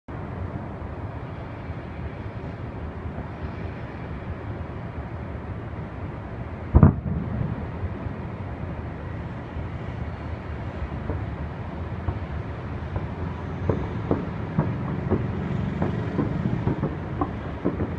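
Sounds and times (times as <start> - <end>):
steady low background rumble: 0.1 - 17.9
distant firework boom: 6.7 - 7.6, 13.0 - 17.9.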